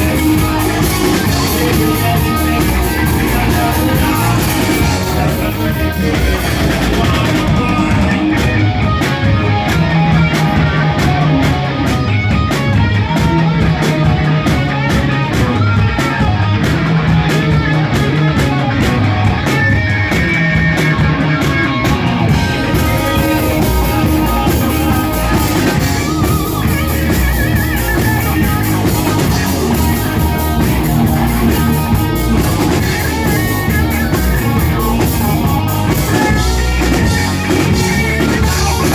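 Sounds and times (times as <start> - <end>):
cymbals: 0.0 - 8.1, 22.3 - 38.9
rock band playing live: 0.0 - 38.9.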